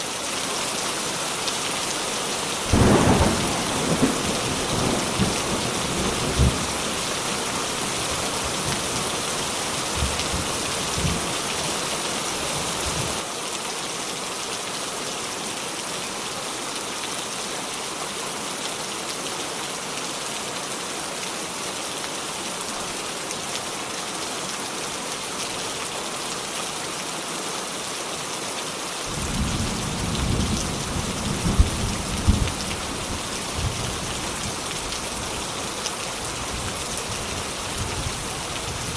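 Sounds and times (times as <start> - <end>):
heavy rain hissing: 0.0 - 13.4, 29.1 - 38.9
thunder rumbling and cracking: 2.7 - 6.8, 29.2 - 33.9.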